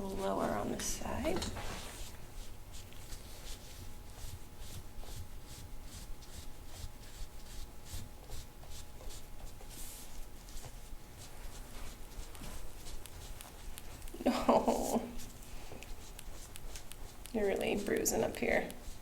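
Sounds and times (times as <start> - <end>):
tool scraping skin: 14.8 - 19.0.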